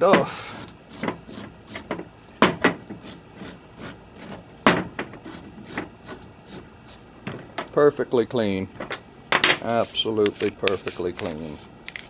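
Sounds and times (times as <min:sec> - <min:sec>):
brush scrubbing metal: 0:00.4 - 0:02.0, 0:03.0 - 0:04.4, 0:05.2 - 0:07.1, 0:09.7 - 0:12.0.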